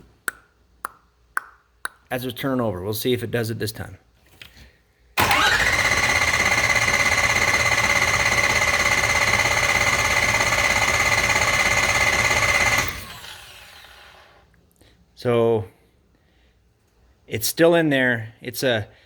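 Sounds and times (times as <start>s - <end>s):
diesel engine cranking: 5.2s - 14.3s.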